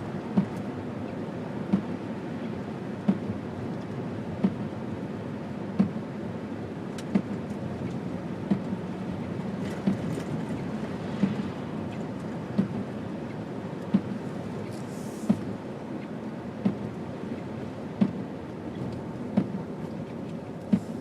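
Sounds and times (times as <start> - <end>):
car engine and road hum: 0.0 - 21.0
windshield wiper thumps: 0.2 - 0.7, 1.6 - 2.0, 3.0 - 3.4, 4.3 - 4.8, 5.7 - 6.1, 7.0 - 13.1, 13.8 - 15.6, 16.5 - 17.1, 17.9 - 21.0.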